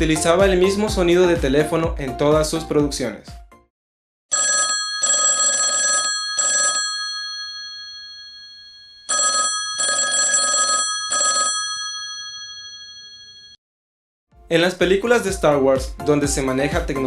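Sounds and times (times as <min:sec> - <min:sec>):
telephone bell ringing: 0:04.3 - 0:13.6.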